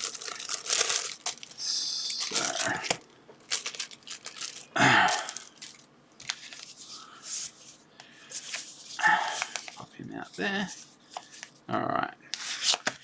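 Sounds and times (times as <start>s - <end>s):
plastic packaging clicks and crinkles: 0.0s - 1.6s, 2.2s - 6.7s.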